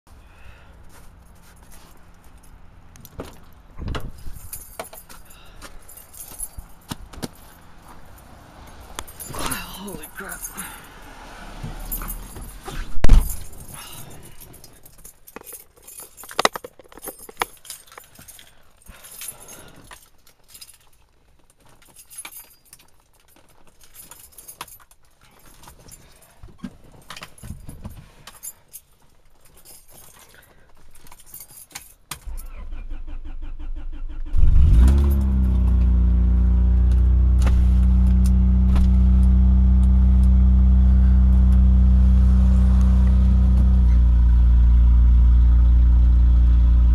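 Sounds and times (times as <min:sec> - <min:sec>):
car engine cranking and idling: 0:00.1 - 0:18.4, 0:32.2 - 0:46.9
car keys jangling: 0:00.8 - 0:35.9.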